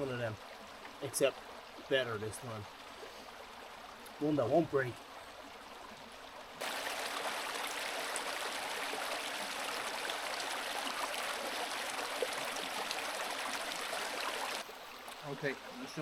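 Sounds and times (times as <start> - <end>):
river water rushing: 6.5 - 16.0.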